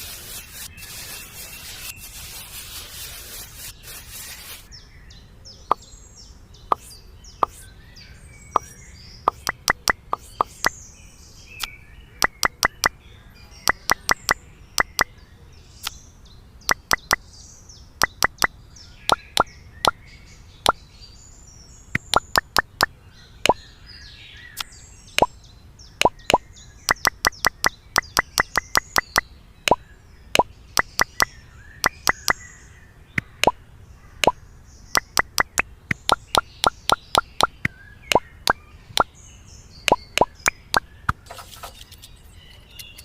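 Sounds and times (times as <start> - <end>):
mini bricks tapped into place: 9.3 - 10.7, 12.2 - 12.9, 13.7 - 15.1, 16.7 - 17.2, 18.0 - 18.5, 22.0 - 22.9, 26.0 - 29.8, 35.0 - 38.2.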